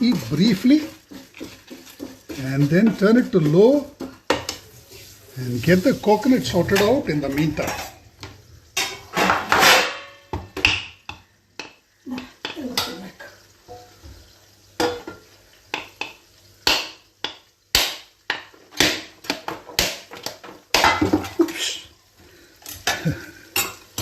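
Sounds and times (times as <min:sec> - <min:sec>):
kitchen utensils clattering: 0:05.7 - 0:08.1, 0:08.8 - 0:10.9, 0:14.8 - 0:15.2, 0:18.3 - 0:21.8, 0:22.6 - 0:24.0.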